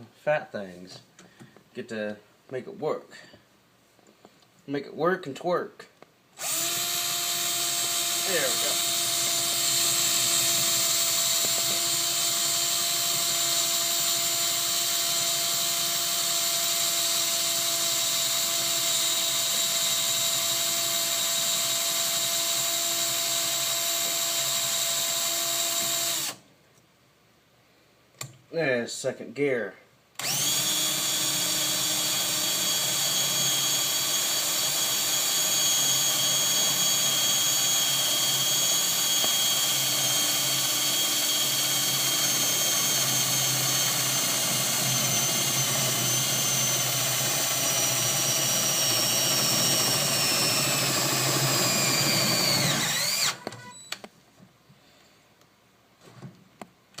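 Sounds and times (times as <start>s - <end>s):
cordless drill whining: 6.4s - 26.4s, 30.2s - 54.1s.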